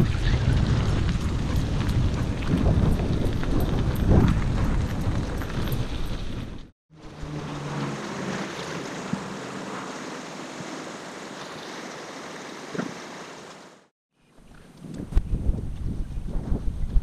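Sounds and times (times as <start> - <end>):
wind buffeting microphone: 0.0 - 6.7, 14.4 - 17.0
steady rushing outdoor noise: 0.0 - 13.9.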